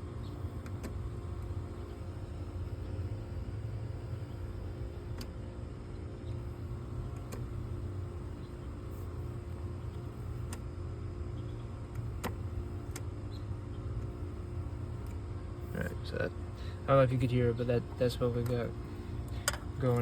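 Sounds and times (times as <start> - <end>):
electric fuel pump hum: 0.0 - 20.0.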